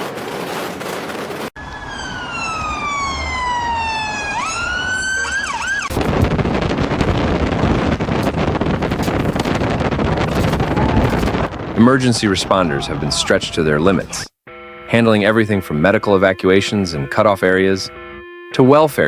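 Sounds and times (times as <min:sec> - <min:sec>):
emergency siren wailing: 0:01.6 - 0:19.0
loud rushing noise: 0:05.9 - 0:13.6.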